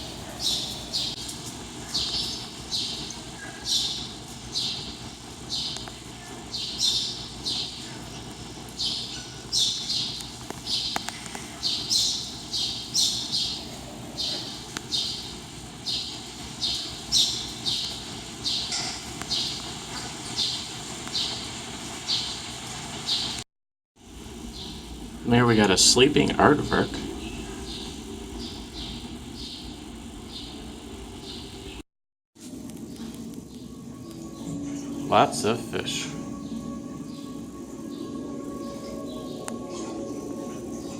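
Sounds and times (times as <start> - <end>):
low hum: 24.0 - 31.8, 32.5 - 40.9.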